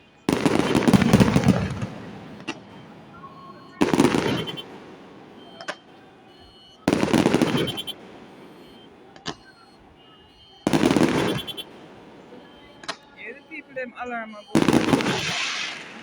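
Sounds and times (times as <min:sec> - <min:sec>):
fireworks booms with crackle: 0:00.0 - 0:16.0
sharp firework bangs: 0:00.3 - 0:13.6, 0:14.4 - 0:16.0.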